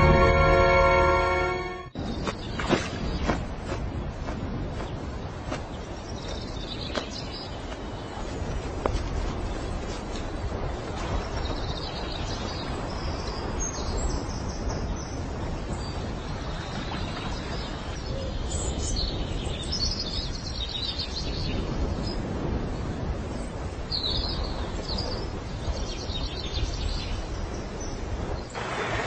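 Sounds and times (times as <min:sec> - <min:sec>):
small birds chirping: 0:04.8 - 0:08.6
steady rushing noise: 0:19.2 - 0:29.0.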